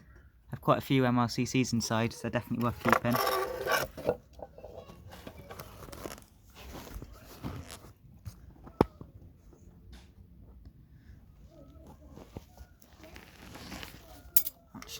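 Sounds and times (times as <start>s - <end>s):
plastic crunching and scraping: 2.3s - 9.1s, 12.0s - 14.4s.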